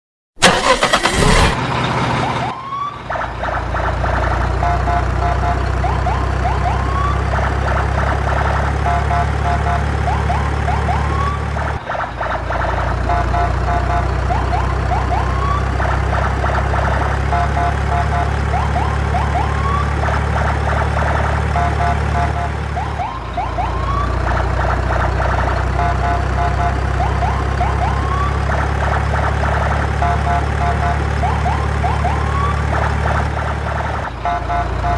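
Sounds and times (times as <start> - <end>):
electronic siren whoops: 2.2 - 3.5, 4.6 - 7.5, 8.8 - 11.8, 13.1 - 20.5, 21.1 - 24.4, 25.8 - 28.9, 30.0 - 32.8
beeping tones: 4.5 - 7.2, 8.7 - 11.4, 17.2 - 18.9, 21.5 - 22.6, 25.6 - 28.2, 34.2 - 34.9.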